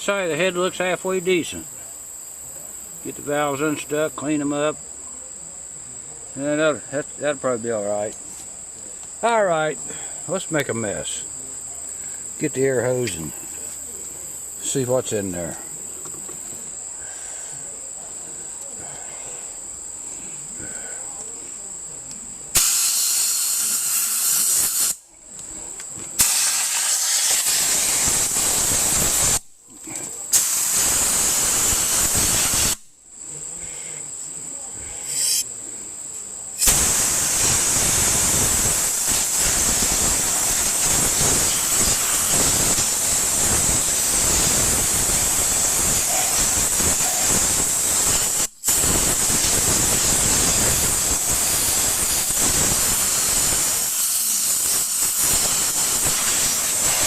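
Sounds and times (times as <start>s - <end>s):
crickets chirping: 0.0s - 57.0s
compressed air blasting: 22.5s - 25.0s, 26.2s - 29.6s, 30.3s - 32.9s, 35.0s - 35.5s, 36.6s - 57.0s.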